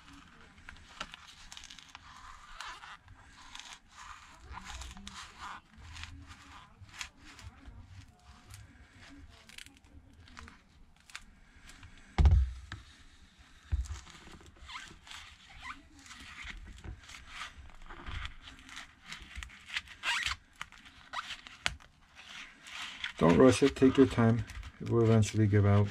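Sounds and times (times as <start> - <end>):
plastic card scraping: 0.0 - 25.9
thump: 12.2 - 12.7.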